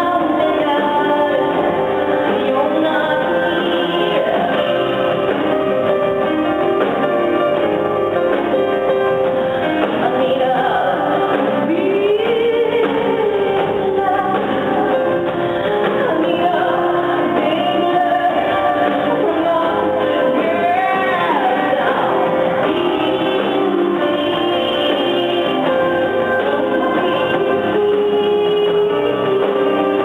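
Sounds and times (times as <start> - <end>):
instrumental accompaniment: 0.0 - 30.0
woman singing: 0.0 - 30.0.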